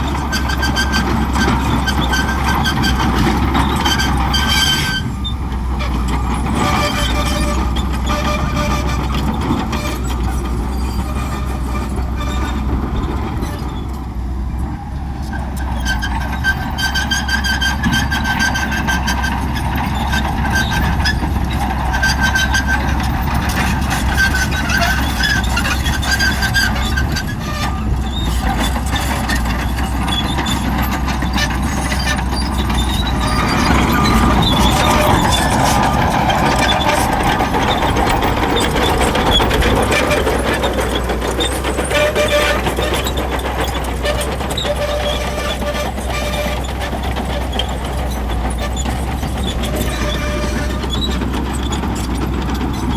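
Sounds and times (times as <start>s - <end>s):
bulldozer diesel engine droning: 0.0s - 52.9s
high-pitched squealing: 23.9s - 52.9s.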